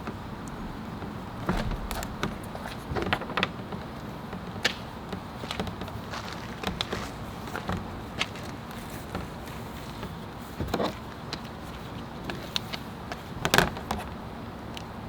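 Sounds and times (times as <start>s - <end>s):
car parts clicking and knocking: 0.0s - 9.4s.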